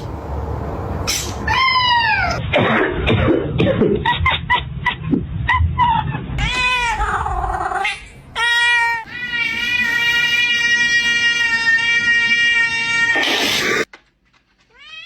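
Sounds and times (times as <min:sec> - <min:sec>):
cat meowing: 0:06.4 - 0:13.9.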